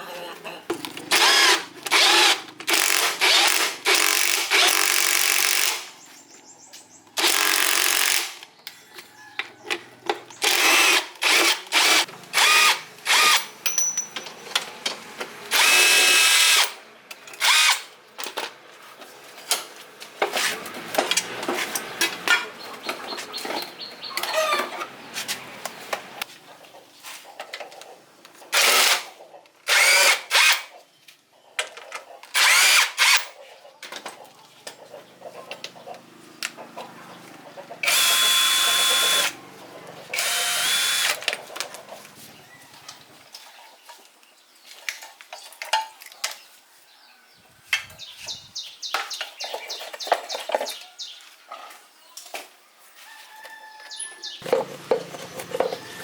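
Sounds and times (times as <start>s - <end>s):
electric power tool bursts: 37.8s - 39.4s, 40.2s - 41.2s.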